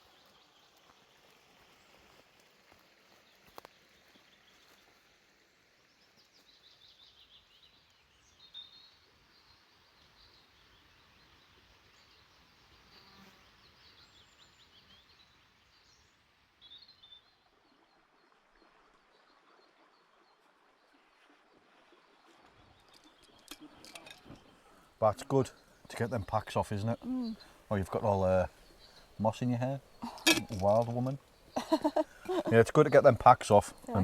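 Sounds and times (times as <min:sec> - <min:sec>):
light steady hiss: 0:00.0 - 0:17.3, 0:20.4 - 0:34.0
birds trilling and chirping: 0:22.8 - 0:34.0.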